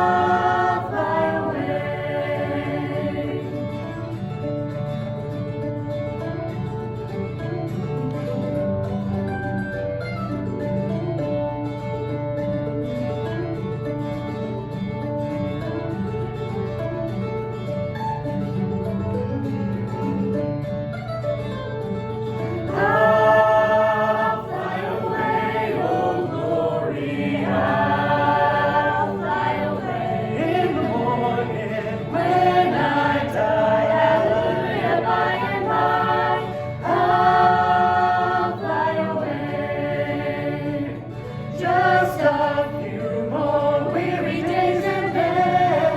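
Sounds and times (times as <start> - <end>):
voices singing a hymn: 0.0 - 4.3, 22.6 - 45.9
guitar playing: 0.0 - 45.9.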